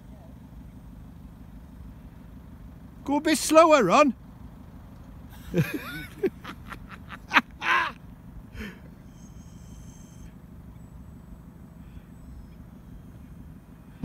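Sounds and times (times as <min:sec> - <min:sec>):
vehicle engine humming: 0:00.0 - 0:14.0
seagull squawking: 0:06.2 - 0:08.0.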